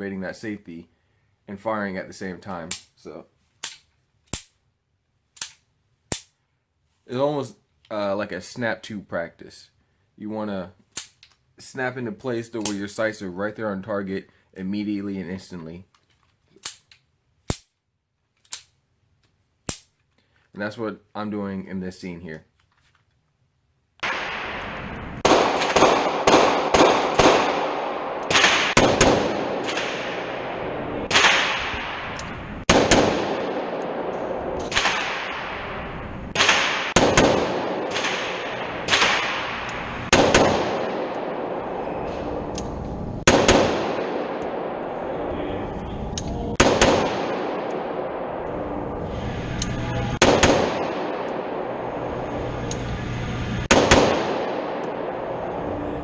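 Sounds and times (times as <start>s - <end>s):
gunshots with ringing echo: 24.0s - 42.6s, 43.2s - 49.1s, 50.2s - 52.4s, 53.6s - 56.0s.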